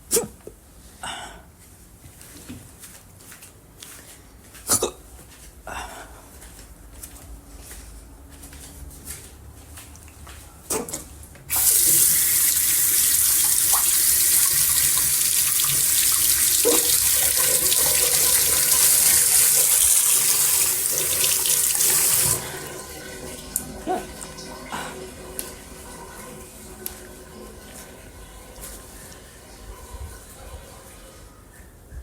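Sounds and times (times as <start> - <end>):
person hiccuping: 0.1 - 0.5, 4.7 - 5.1
tap water running into sink: 11.5 - 30.8.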